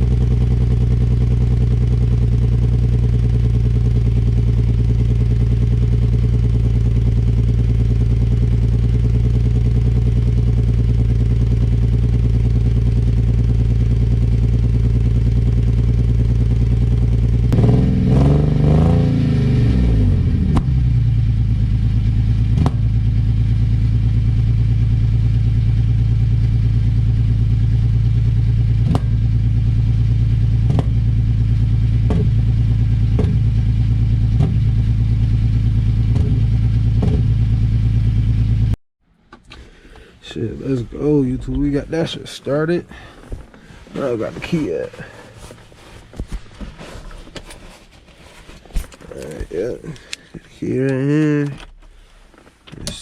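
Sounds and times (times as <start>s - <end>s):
car engine idling: 0.0s - 46.5s, 48.7s - 53.0s
engine throttle blip: 19.8s - 23.4s, 26.4s - 44.2s.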